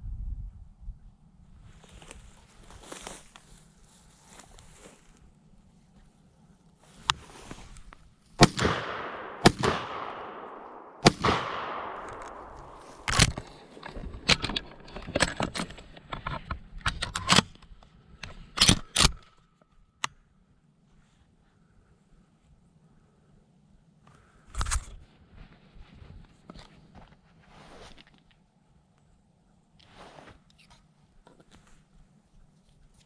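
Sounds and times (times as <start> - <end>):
shotgun blasts with echo: 8.4 - 14.4
sharp clicks and knocks: 9.4 - 19.3.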